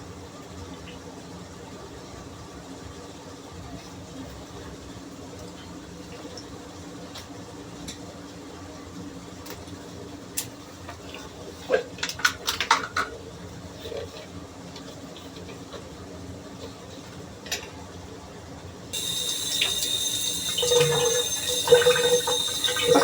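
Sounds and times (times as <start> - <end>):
tap water running: 19.0 - 23.0.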